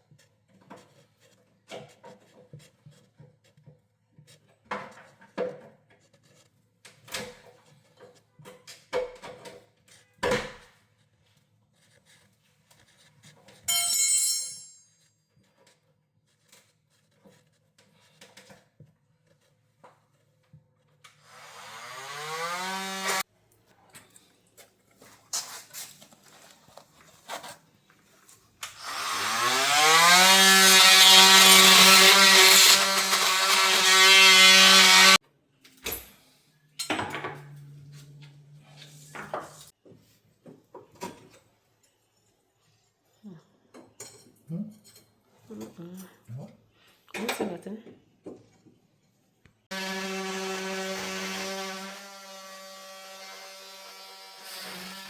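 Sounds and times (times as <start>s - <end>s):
power tool motor cutting wood: 21.2s - 23.2s, 28.7s - 35.2s, 49.7s - 55.0s
knocks and scrapes: 37.0s - 41.6s.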